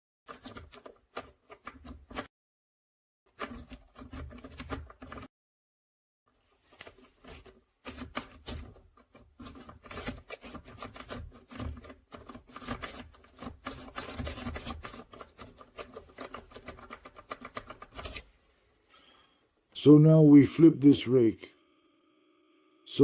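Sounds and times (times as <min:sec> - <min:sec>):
lock pick scraping in padlock: 0:07.2 - 0:18.3.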